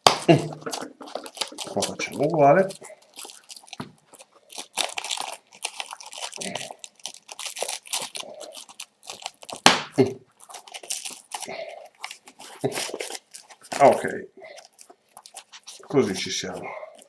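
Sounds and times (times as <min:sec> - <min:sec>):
fabric straps rustling: 0:10.3 - 0:17.0.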